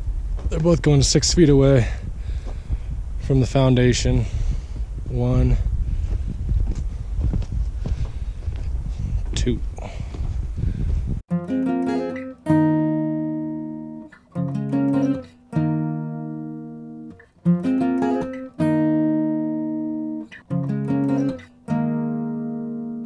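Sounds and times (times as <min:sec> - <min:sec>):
acoustic guitar strumming: 0:11.3 - 0:23.0.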